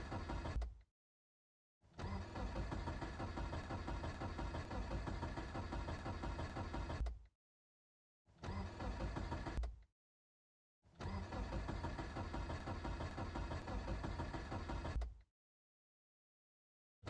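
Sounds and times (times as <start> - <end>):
car starter cranking engine: 0.0 - 0.7, 2.0 - 7.2, 8.4 - 9.7, 11.0 - 15.2.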